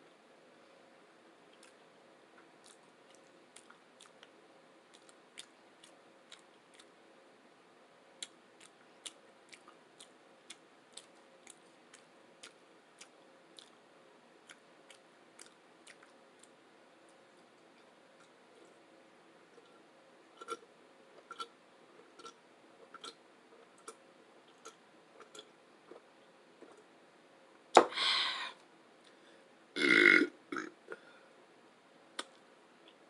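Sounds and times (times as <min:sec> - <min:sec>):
faint steady hum: 0:00.0 - 0:33.0
wet chewing mouth clicks: 0:04.9 - 0:06.9, 0:08.2 - 0:13.8, 0:14.4 - 0:16.6.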